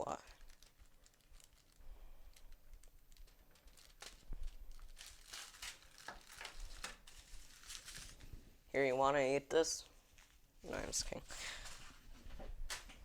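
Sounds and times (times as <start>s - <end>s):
packaging crinkling: 0.0s - 8.4s.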